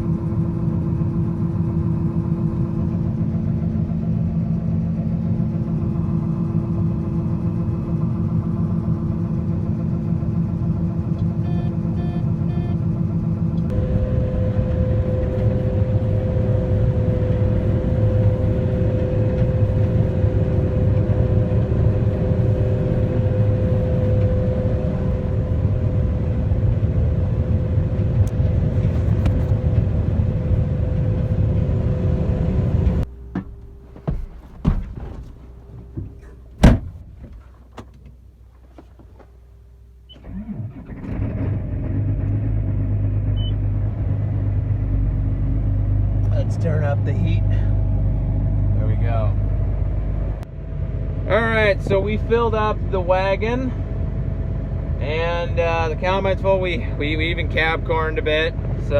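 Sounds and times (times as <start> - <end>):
combine harvester whining: 0.0 - 58.9
sharp clicks and knocks: 33.3 - 39.3.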